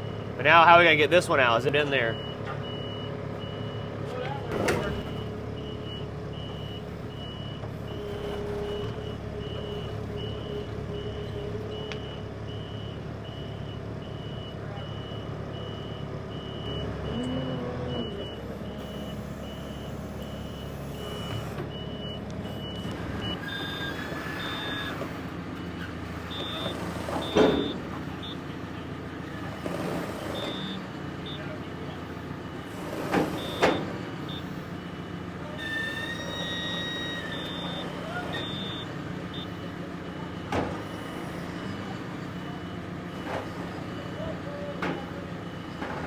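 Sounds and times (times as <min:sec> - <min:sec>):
backup alarm beeping: 0:00.0 - 0:03.9, 0:04.6 - 0:44.3
engine running: 0:00.0 - 0:46.0.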